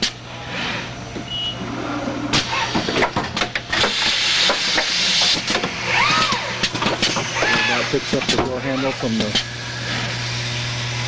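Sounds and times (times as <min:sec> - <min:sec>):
pneumatic hiss: 0:00.0 - 0:10.9
electrical hum: 0:00.0 - 0:11.0
machine clicking and clunking: 0:02.3 - 0:07.6.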